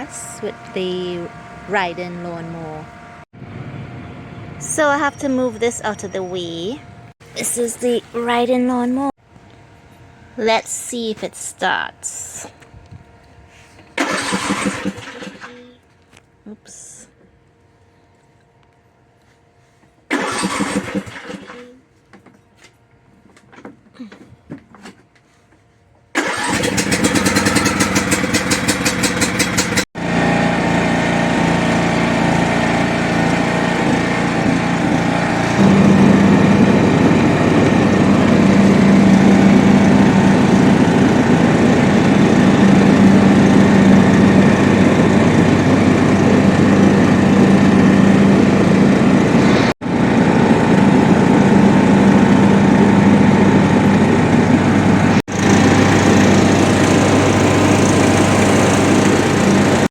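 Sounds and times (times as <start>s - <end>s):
lawnmower engine running: 0.0s - 6.0s, 13.9s - 15.7s, 20.1s - 21.7s, 26.1s - 59.9s
engine cranking on starter: 14.0s - 15.7s, 20.1s - 21.7s, 26.2s - 59.9s.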